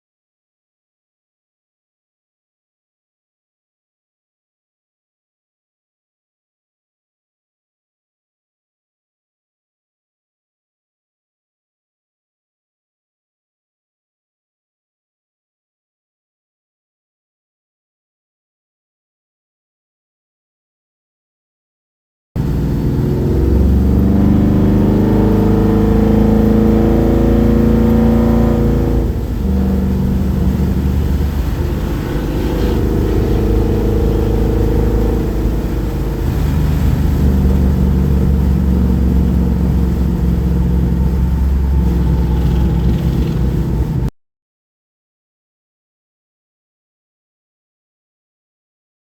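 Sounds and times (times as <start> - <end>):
car engine accelerating: 22.4 - 44.1.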